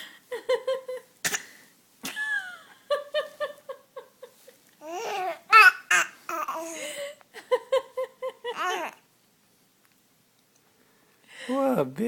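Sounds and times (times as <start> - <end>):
baby coughing: 1.2 - 1.5, 4.9 - 6.8
baby squealing: 4.8 - 6.6
baby grunting: 4.8 - 6.8
baby vocalizing: 4.8 - 6.8, 8.5 - 9.0.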